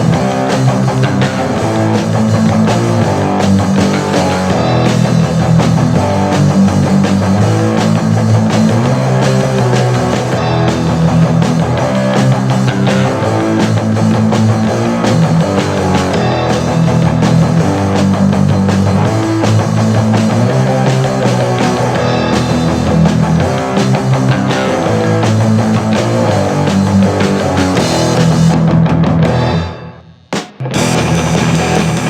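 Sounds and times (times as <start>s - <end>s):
drum kit steady beat: 0.0s - 32.0s
rock band guitar: 0.0s - 32.0s.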